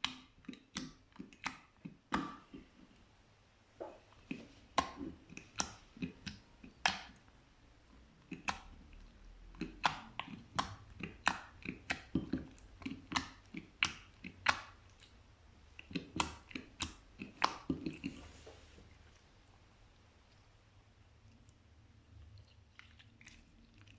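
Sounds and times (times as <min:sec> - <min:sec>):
slime wet pops and clicks: 0:09.6 - 0:14.8, 0:15.9 - 0:17.8.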